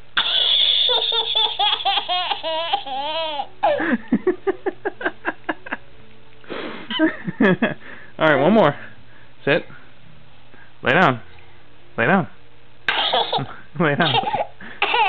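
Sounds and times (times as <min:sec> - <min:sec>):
small child laughing: 0:00.2 - 0:04.2, 0:13.0 - 0:15.0.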